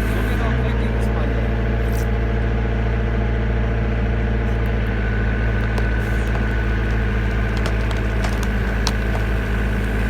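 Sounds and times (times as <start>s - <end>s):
hydraulic power unit engine running: 4.6s - 10.0s.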